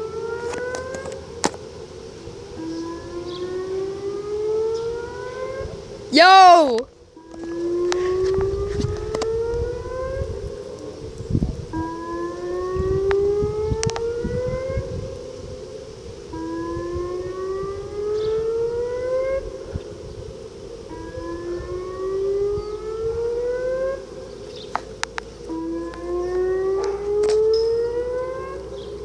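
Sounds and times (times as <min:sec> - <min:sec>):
tornado siren whooping: 0:00.0 - 0:01.5, 0:02.3 - 0:29.0
distant steady siren tone: 0:00.0 - 0:29.0.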